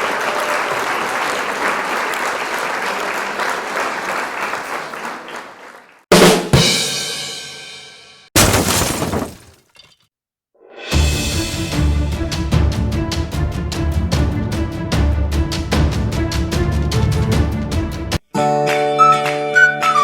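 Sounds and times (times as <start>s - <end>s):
applause: 0.0s - 6.1s.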